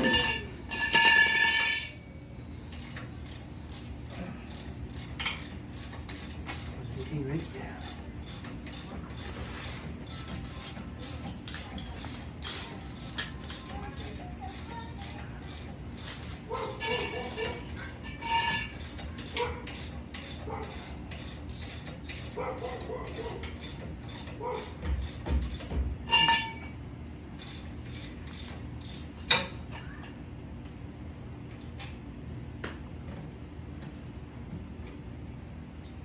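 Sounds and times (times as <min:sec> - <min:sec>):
metal tools clinking: 0:00.0 - 0:02.1, 0:16.0 - 0:20.5, 0:26.1 - 0:26.7
ratchet wrench clicking: 0:02.8 - 0:06.8, 0:07.4 - 0:25.7, 0:27.4 - 0:29.5.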